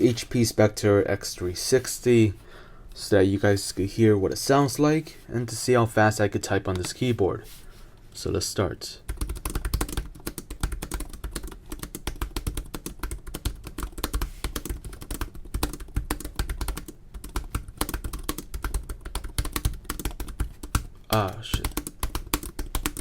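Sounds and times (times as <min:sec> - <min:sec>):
fast typing on laptop keyboard: 0:09.1 - 0:23.0.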